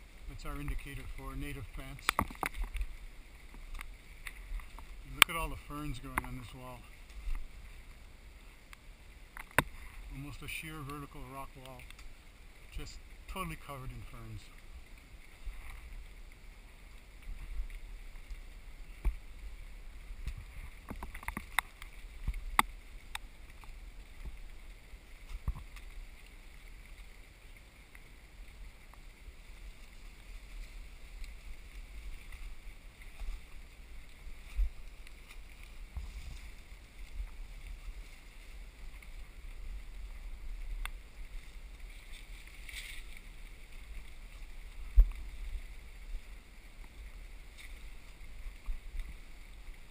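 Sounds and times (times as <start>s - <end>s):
wind rumble on microphone: 28.3s - 49.9s
footsteps on trail: 28.9s - 49.9s.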